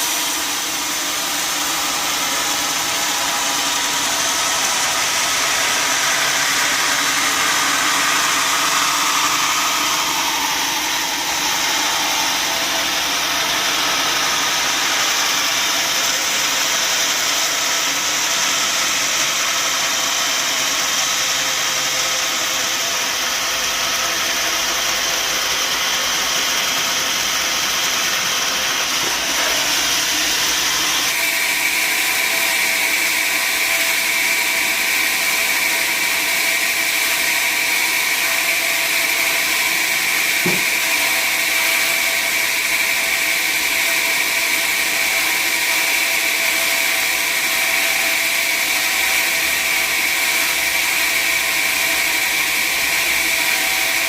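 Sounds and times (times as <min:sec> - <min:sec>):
log saw hissing: 0:00.0 - 0:18.4.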